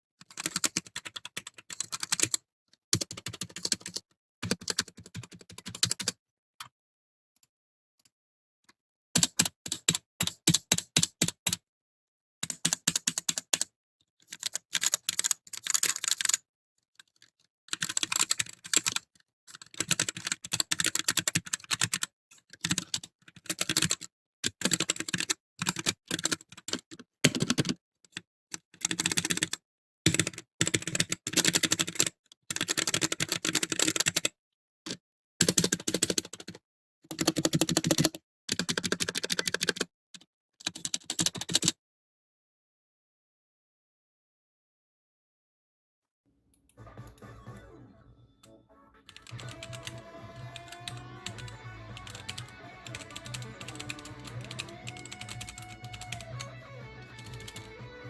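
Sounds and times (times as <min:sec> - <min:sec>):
mechanical keyboard typing: 0:00.2 - 0:02.4, 0:03.0 - 0:06.2, 0:12.5 - 0:13.7, 0:14.3 - 0:16.4, 0:17.7 - 0:27.8, 0:28.8 - 0:34.3, 0:35.4 - 0:39.9, 0:49.1 - 0:58.0.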